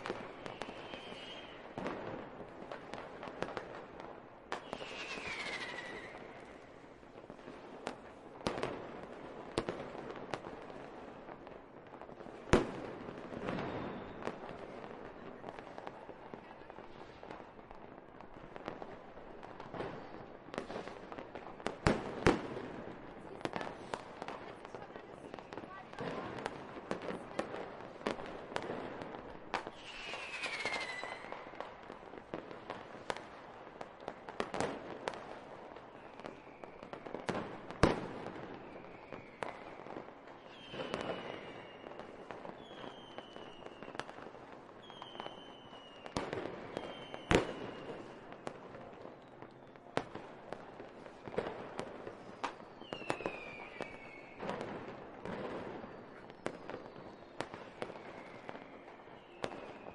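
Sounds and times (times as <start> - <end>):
falling firework whistles: 0.0 - 2.1, 4.5 - 6.9, 13.4 - 14.7, 29.5 - 31.8, 35.9 - 50.2, 52.2 - 59.9
fireworks bangs and crackles: 0.0 - 59.9.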